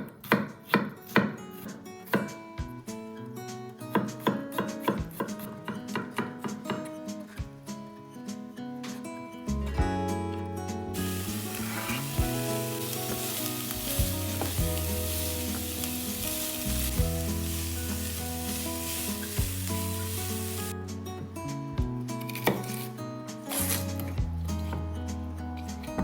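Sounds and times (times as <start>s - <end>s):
quiet background music: 0.2s - 26.0s
food sizzling in a hot pan: 11.0s - 20.7s.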